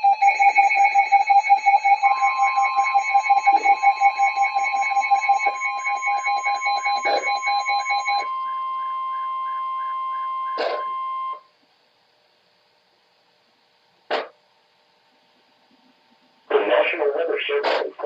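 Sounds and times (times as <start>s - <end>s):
fast electronic beeping: 0.0s - 8.4s
steady high alert tone: 0.0s - 11.4s.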